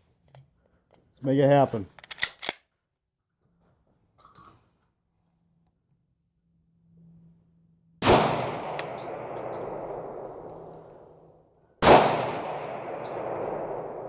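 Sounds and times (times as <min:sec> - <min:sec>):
pistol shots echoing: 0:08.0 - 0:11.2, 0:11.8 - 0:14.0.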